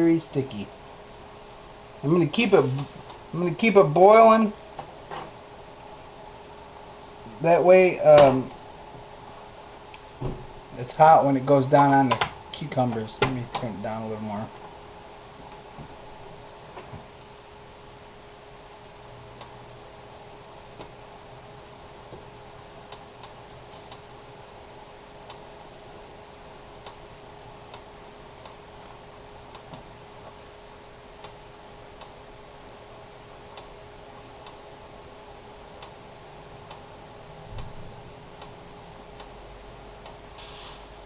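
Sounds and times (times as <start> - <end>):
steady hum: 0.0 - 41.0
soft low thump: 10.2 - 10.5.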